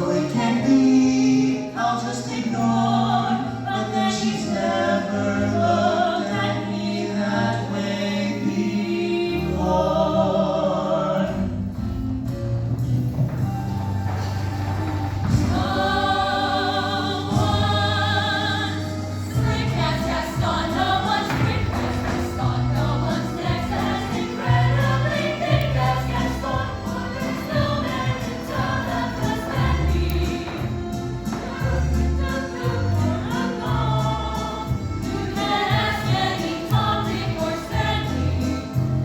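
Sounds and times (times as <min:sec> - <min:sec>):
choir singing: 0:00.0 - 0:11.6, 0:14.0 - 0:39.0
bass accompaniment: 0:08.4 - 0:39.0.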